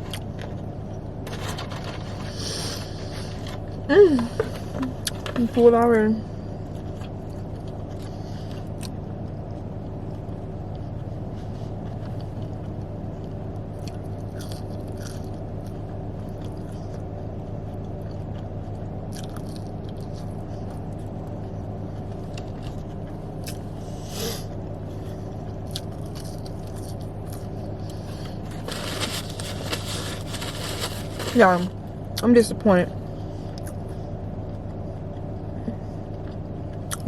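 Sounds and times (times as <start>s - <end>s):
steady low hum: 0.0s - 37.0s
person chewing food: 6.6s - 23.7s, 25.1s - 31.4s.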